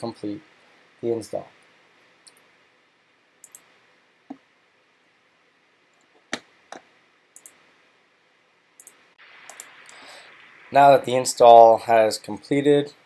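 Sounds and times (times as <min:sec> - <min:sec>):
faint room hiss: 0:00.0 - 0:13.0
computer control clicks: 0:03.4 - 0:03.7, 0:07.4 - 0:07.6, 0:08.8 - 0:10.6.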